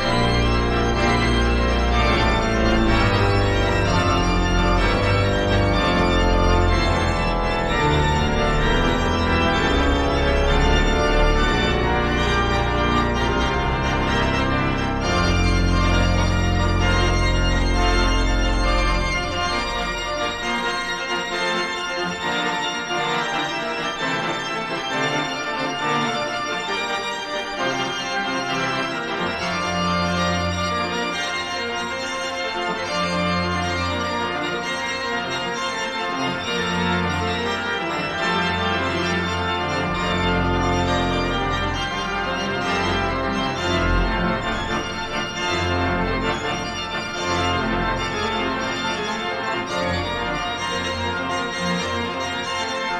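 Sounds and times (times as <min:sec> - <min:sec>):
organ music: 0:00.0 - 0:52.9.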